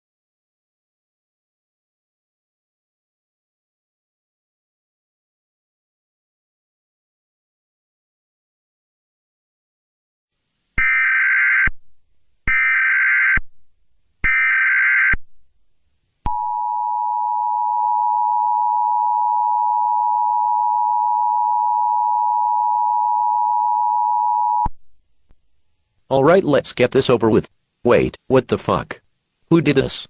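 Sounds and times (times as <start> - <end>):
two-tone attention signal: 16.3 - 24.7.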